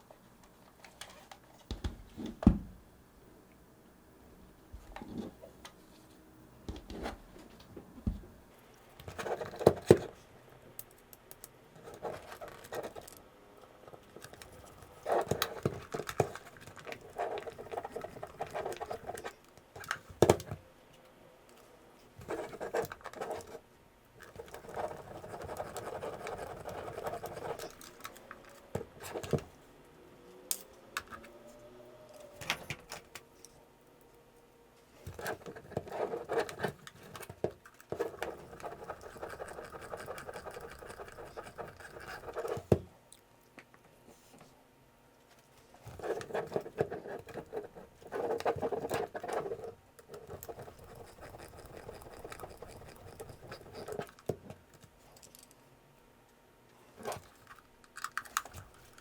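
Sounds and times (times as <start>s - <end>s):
scratching and rubbing: 24.3s - 28.2s, 35.1s - 42.7s, 45.9s - 54.2s
small parts clicking and tapping: 48.3s - 55.6s, 57.0s - 59.0s.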